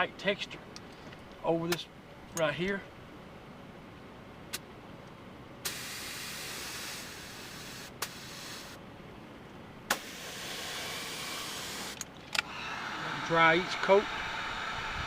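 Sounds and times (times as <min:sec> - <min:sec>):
spray gun hissing: 0:05.6 - 0:08.8, 0:09.9 - 0:12.0.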